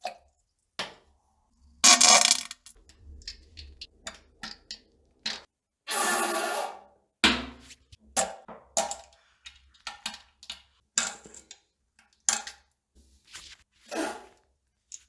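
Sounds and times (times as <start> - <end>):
person defecating: 1.8 - 3.8.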